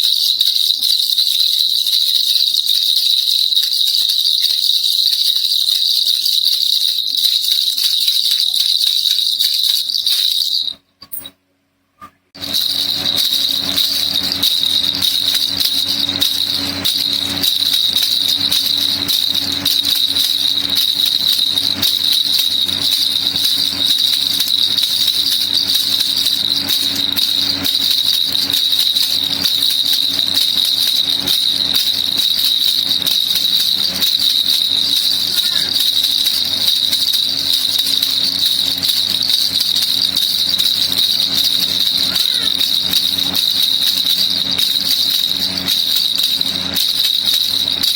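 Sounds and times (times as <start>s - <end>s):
baby rattle shaken: 0.0s - 11.3s, 12.4s - 47.9s
high ringing note: 12.4s - 47.9s.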